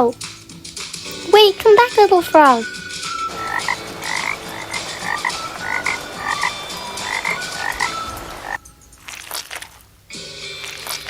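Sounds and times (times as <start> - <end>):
steady hiss: 0.2 - 11.0
frog croaking: 2.8 - 8.6.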